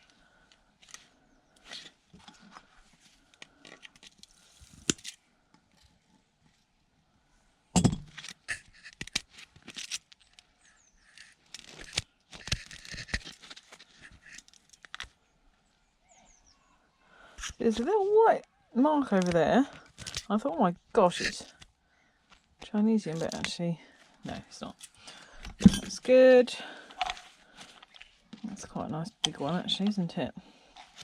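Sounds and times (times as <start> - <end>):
small parts clicking and scraping: 7.8 - 15.2, 26.8 - 28.4.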